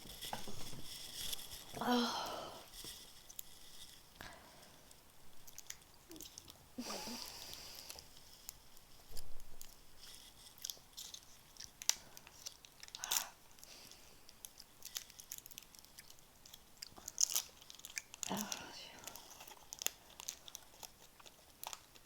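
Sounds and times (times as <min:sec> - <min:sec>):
person chewing sweet: 0:04.7 - 0:22.0.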